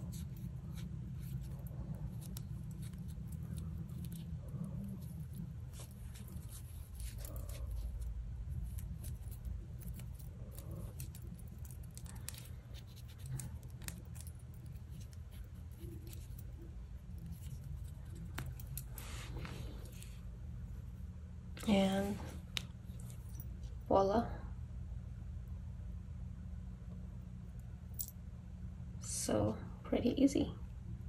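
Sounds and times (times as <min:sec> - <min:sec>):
faint low hum: 0:00.0 - 0:31.0
metal padlock clicks and scrapes: 0:00.1 - 0:08.0, 0:08.6 - 0:19.0.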